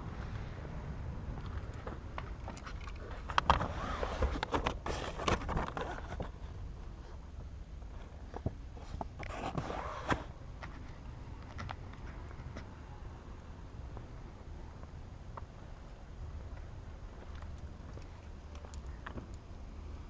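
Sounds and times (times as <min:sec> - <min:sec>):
low steady car rumble: 0:00.0 - 0:20.0
clicks and light knocks: 0:16.5 - 0:19.4.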